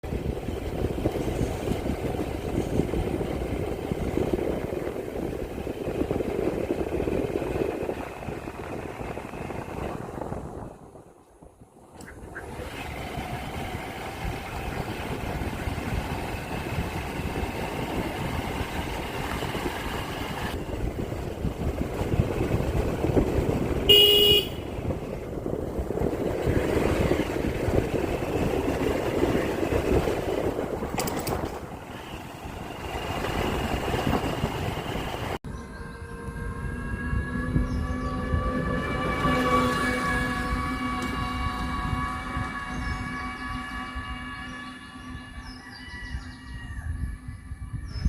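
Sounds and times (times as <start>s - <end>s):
motorbike running on road: 0.0s - 48.0s
horn honk: 23.8s - 25.0s.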